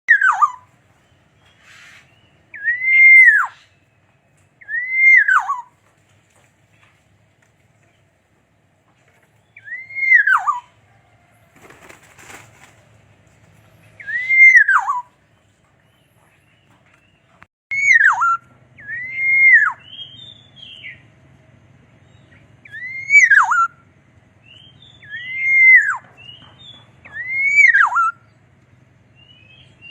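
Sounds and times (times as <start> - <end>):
bird singing fluty whistles: 2.1 - 3.8, 4.6 - 5.7, 9.5 - 10.7, 14.0 - 15.1, 17.7 - 21.0, 22.6 - 23.8, 24.4 - 28.3.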